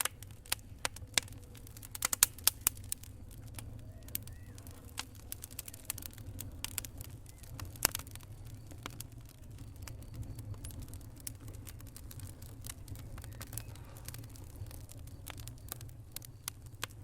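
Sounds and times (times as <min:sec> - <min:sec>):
low steady rumble: 0:00.0 - 0:17.0
wood fire crackling: 0:00.0 - 0:17.0.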